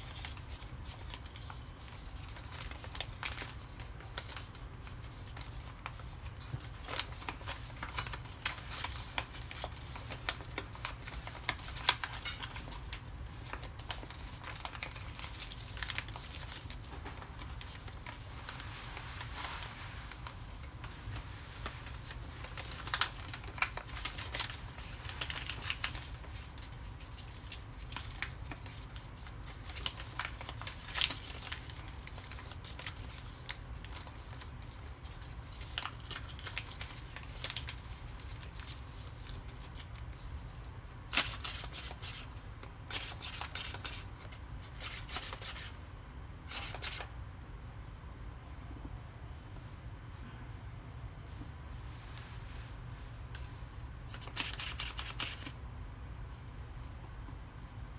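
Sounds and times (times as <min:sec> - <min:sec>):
paper being folded and creased: 0:00.0 - 0:45.7
low steady hum: 0:41.8 - 0:54.3, 0:55.5 - 0:57.9.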